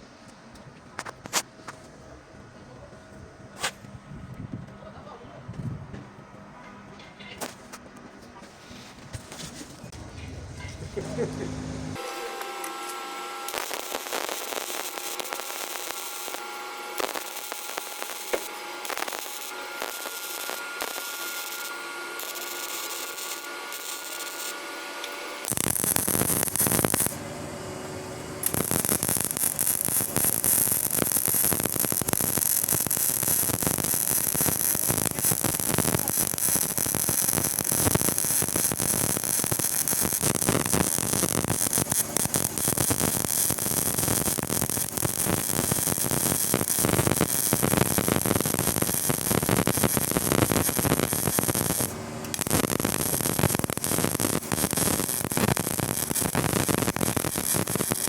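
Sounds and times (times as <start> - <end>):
welder crackling: 1.0 - 1.5, 12.0 - 27.2, 28.0 - 58.0.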